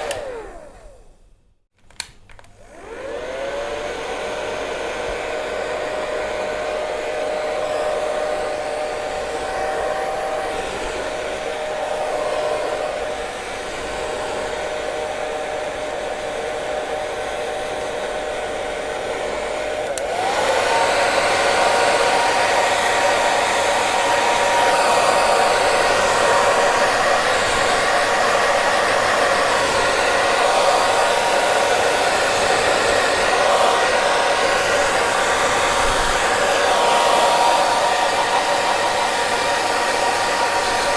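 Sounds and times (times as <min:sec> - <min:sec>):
hair dryer running: 0:00.0 - 0:01.3, 0:02.0 - 0:40.9.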